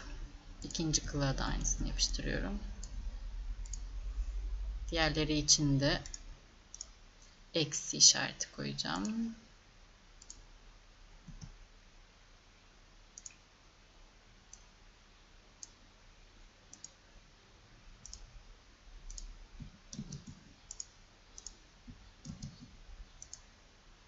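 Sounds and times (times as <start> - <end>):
faint steady hiss: 0.0 - 24.0
short low rumbles: 1.8 - 5.9
computer mouse clicking: 3.6 - 3.9, 6.0 - 7.0, 10.2 - 10.5, 11.2 - 11.6, 13.2 - 13.4, 14.5 - 14.7, 16.7 - 17.0, 18.0 - 18.3, 19.1 - 21.6, 22.2 - 23.5.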